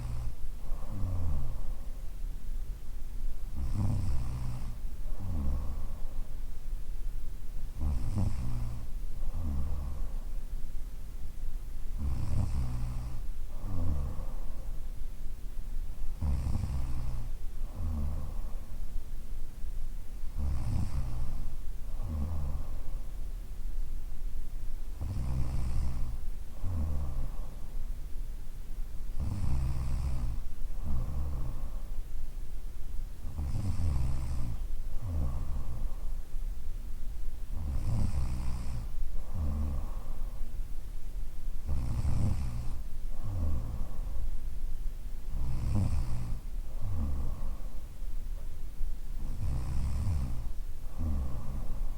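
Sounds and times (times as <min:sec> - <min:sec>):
woman snoring: 0:00.0 - 0:01.9, 0:03.6 - 0:06.2, 0:07.8 - 0:10.2, 0:12.0 - 0:14.6, 0:16.1 - 0:18.7, 0:20.4 - 0:23.1, 0:25.0 - 0:27.5, 0:29.1 - 0:31.9, 0:33.2 - 0:36.0, 0:37.5 - 0:40.4, 0:41.6 - 0:44.2, 0:45.3 - 0:47.7, 0:49.2 - 0:51.9.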